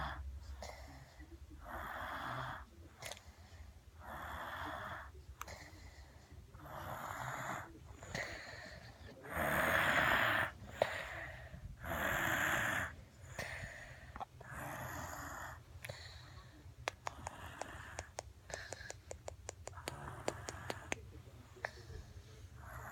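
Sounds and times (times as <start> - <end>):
baby snoring: 6.6 - 8.5, 9.2 - 15.6, 17.0 - 18.6.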